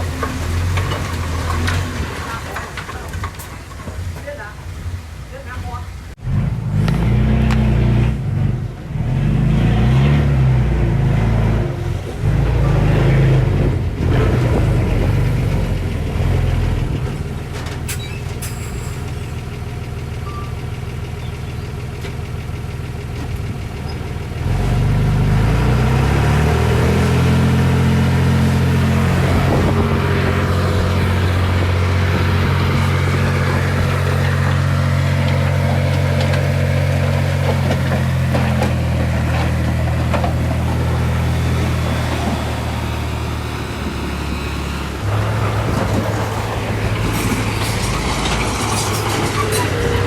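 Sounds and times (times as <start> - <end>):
heavy diesel engine revving: 6.1 - 17.7, 18.7 - 50.0.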